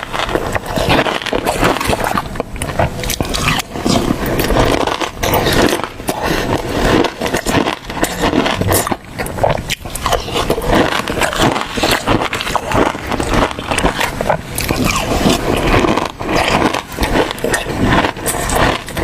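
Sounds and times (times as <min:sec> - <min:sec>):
crunching and chewing: 0:00.0 - 0:19.0.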